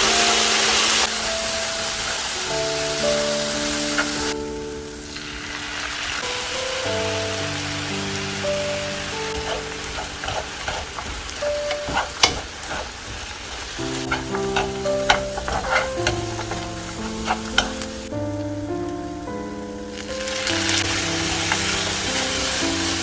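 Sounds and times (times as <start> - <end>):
background music: 0.0 - 23.0
food sizzling in hot oil: 0.0 - 23.0
spatula scraping pan: 9.1 - 18.1, 20.8 - 23.0.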